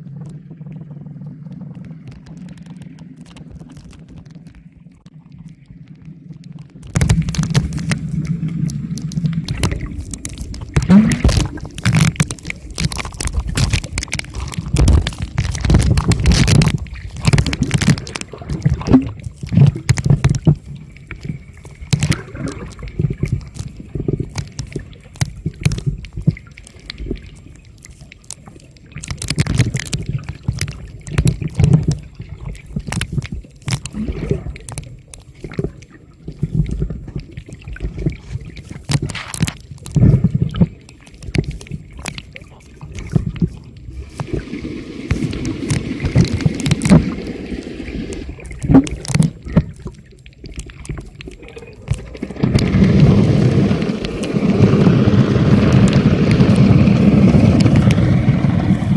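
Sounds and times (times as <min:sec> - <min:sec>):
water sloshing and gurgling: 0:00.0 - 0:58.9
sharp clicks and knocks: 0:06.6 - 0:27.1, 0:27.8 - 0:34.0, 0:37.9 - 0:43.6, 0:45.1 - 0:47.3.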